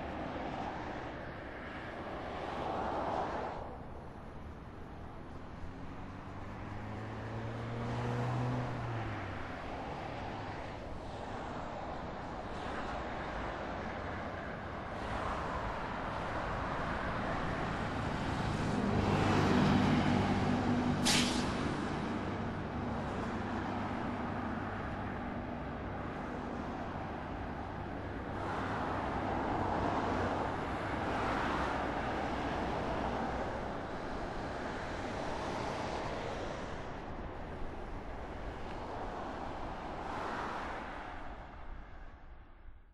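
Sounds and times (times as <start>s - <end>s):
road traffic passing: 0.0s - 42.9s
air brakes hissing: 21.0s - 21.6s.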